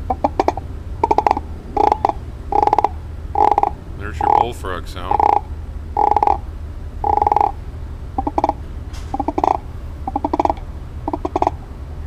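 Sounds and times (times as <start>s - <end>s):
friction frog call croaking: 0.0s - 7.6s, 8.2s - 11.6s.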